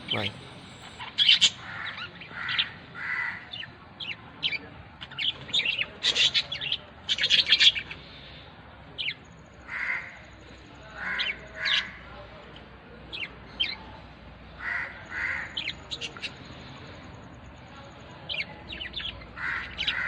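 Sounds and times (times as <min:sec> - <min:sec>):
lovebirds chirping: 0:00.0 - 0:01.6.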